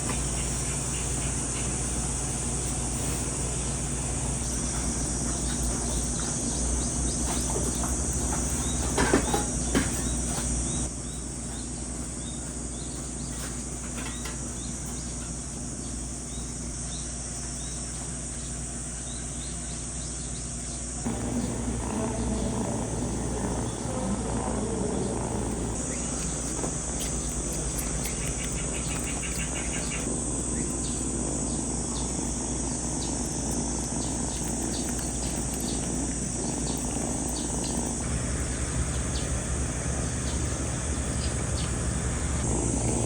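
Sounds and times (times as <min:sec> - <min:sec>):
insects chirring: 0:00.0 - 0:43.0.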